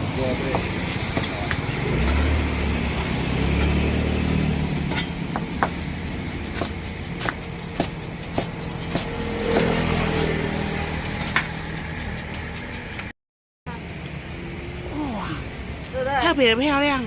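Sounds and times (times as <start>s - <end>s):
vehicle engine rumble: 0.0s - 17.0s.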